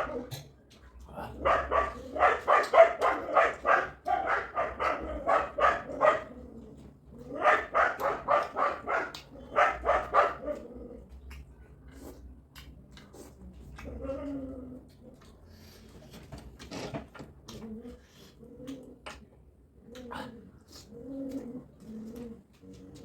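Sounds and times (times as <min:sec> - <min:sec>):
dog barking: 0:01.4 - 0:06.3, 0:07.4 - 0:10.5.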